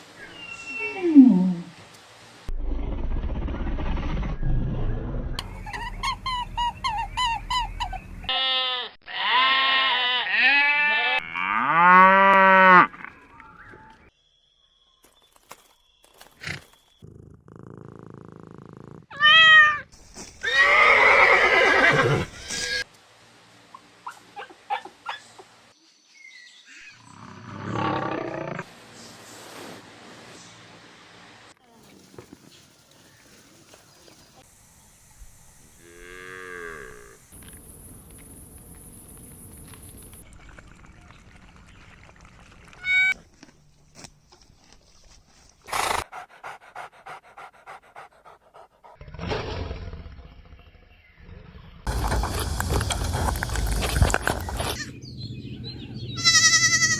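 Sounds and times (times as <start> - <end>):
animal calling: 0.2 - 1.8, 56.2 - 56.9
dog panting: 45.6 - 49.0.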